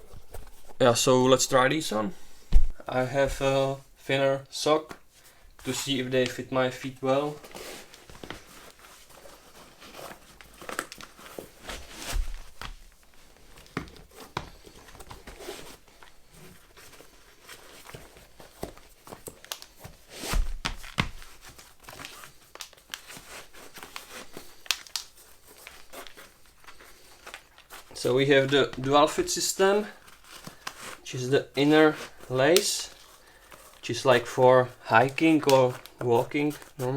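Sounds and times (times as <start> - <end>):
shoes crinkling and rustling: 0.0 - 36.9
dull thumps: 2.4 - 3.6.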